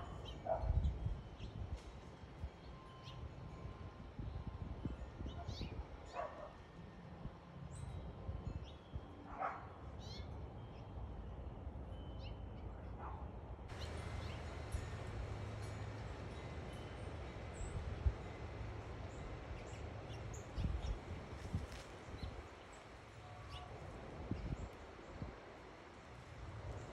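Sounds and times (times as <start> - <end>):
dog barking: 0.4 - 0.8, 6.1 - 6.6, 9.3 - 9.7, 13.0 - 13.2.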